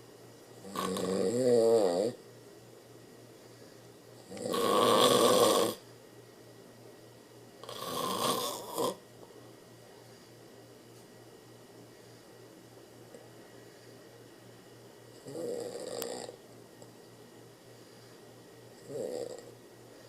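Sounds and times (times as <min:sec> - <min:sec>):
man snoring: 0:00.6 - 0:02.2, 0:04.2 - 0:05.8, 0:07.6 - 0:09.0, 0:15.2 - 0:16.4, 0:18.8 - 0:19.5.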